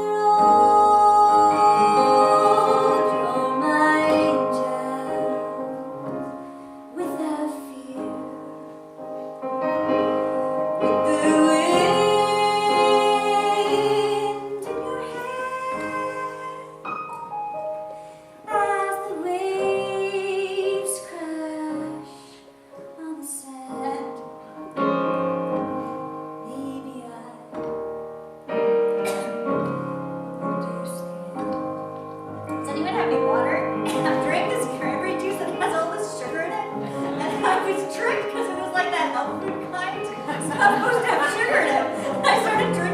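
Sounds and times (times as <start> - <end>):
woman singing: 0.0 - 5.8, 6.9 - 8.5, 10.8 - 16.8, 18.5 - 24.3, 26.4 - 27.7
piano accompaniment: 0.0 - 42.9.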